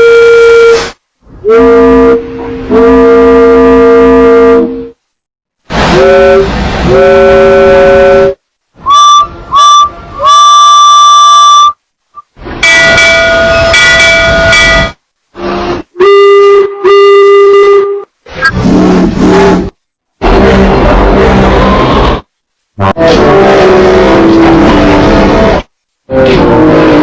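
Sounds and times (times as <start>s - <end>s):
steam whistle blasts: 0.0s - 5.0s, 5.8s - 11.8s, 15.4s - 18.5s.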